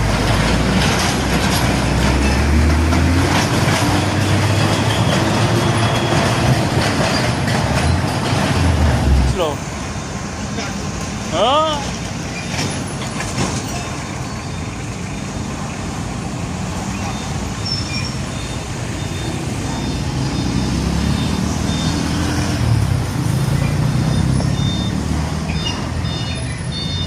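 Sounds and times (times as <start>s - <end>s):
diesel truck engine rumble: 0.0s - 27.0s
traffic noise: 0.0s - 27.0s.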